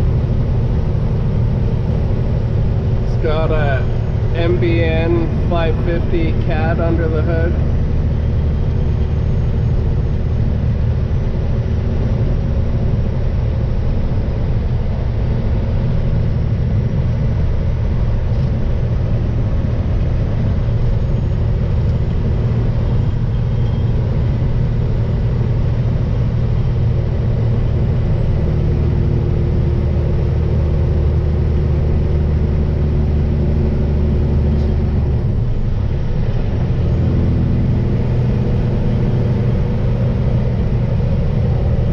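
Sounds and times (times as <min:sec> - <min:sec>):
diesel engine droning: 0:00.0 - 0:41.9
road noise: 0:00.0 - 0:41.9.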